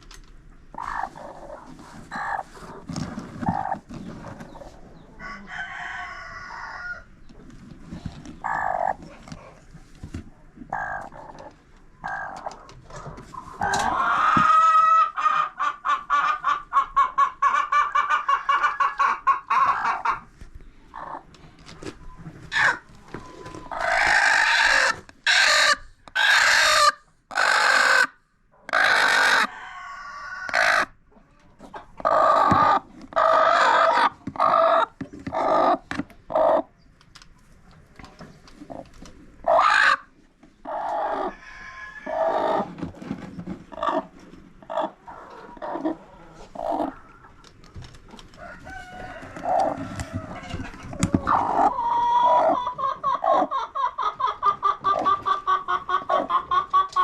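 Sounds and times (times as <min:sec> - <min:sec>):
chickens clucking and calling: 0:00.4 - 0:57.0.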